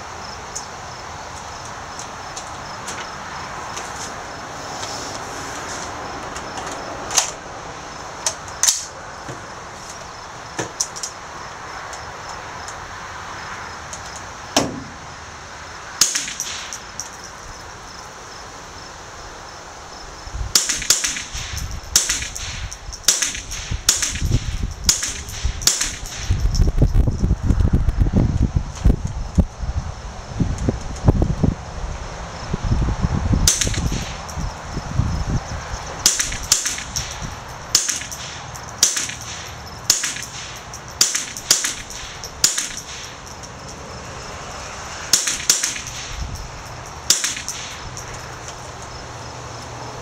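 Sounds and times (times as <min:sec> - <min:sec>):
rifle shots cracking: 0:16.0 - 0:16.8, 0:20.6 - 0:26.4, 0:36.0 - 0:43.2, 0:45.1 - 0:46.2, 0:47.1 - 0:48.0.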